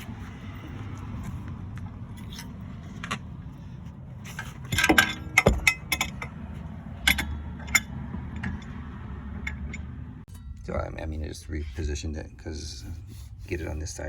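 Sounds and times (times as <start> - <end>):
metal tools clinking: 2.1 - 3.4, 4.2 - 11.0.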